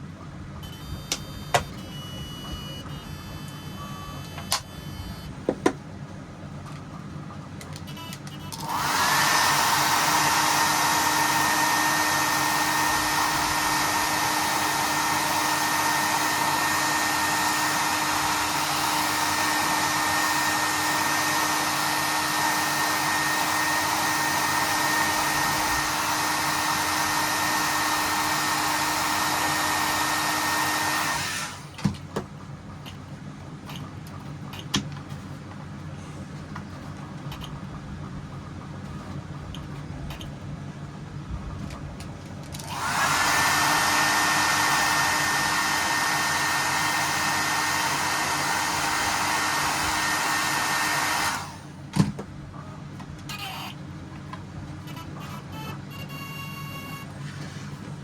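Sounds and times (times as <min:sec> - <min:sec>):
electric blower motor whining: 0:08.5 - 0:31.7, 0:42.6 - 0:51.8.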